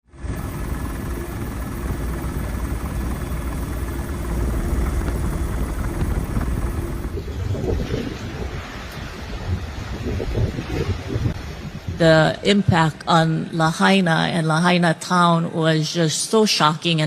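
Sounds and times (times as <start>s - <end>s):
helicopter rotor and engine: 0.0s - 9.7s.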